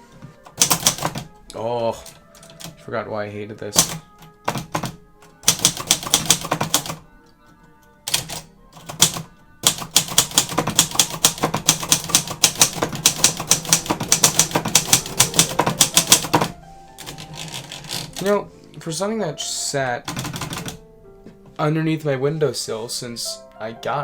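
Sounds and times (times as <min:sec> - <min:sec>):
manual typewriter typing: 0:00.5 - 0:02.8, 0:03.7 - 0:07.0, 0:08.1 - 0:18.4, 0:20.1 - 0:20.8.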